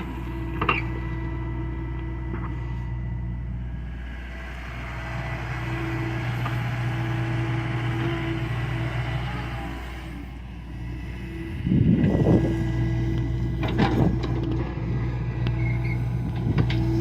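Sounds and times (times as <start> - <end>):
higher tone: 0.0 - 11.4
excavator diesel engine running: 0.0 - 17.0.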